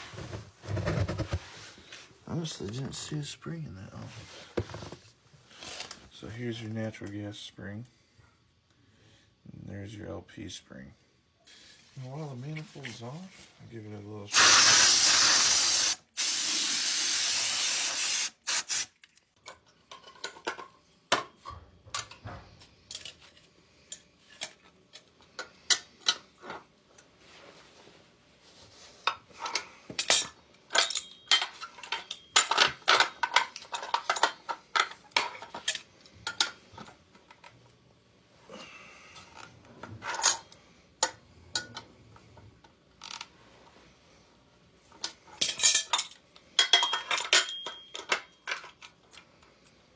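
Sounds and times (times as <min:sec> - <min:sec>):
loud spray hiss: 0:14.3 - 0:18.9
metal tool clinks and taps: 0:30.0 - 0:33.4, 0:45.4 - 0:48.8.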